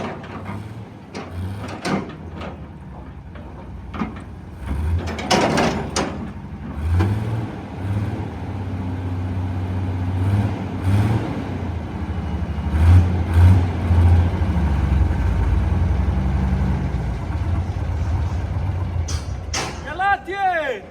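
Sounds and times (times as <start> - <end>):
excavator diesel engine revving: 0.0 - 19.9
sharp knocks: 19.1 - 20.0.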